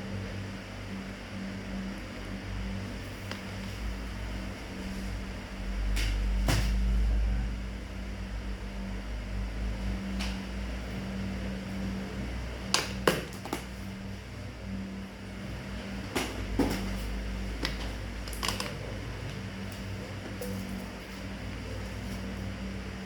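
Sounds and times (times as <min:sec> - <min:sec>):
steady low hum: 0:00.0 - 0:23.0
objects clicking and knocking: 0:17.6 - 0:18.8.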